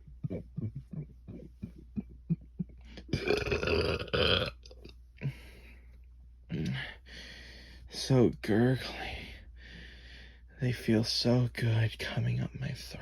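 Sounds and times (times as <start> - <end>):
person burping: 0.2 - 5.4.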